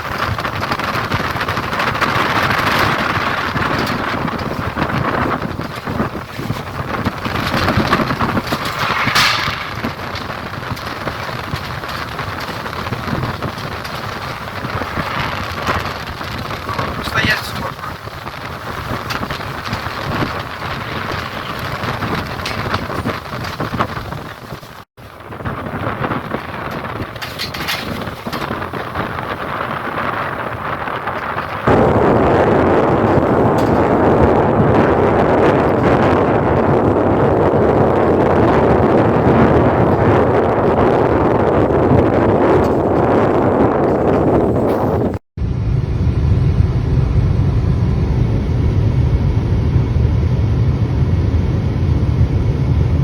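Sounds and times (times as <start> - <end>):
strong wind blowing: 0.0 - 53.0
loud whoosh: 7.2 - 11.6, 12.7 - 18.0.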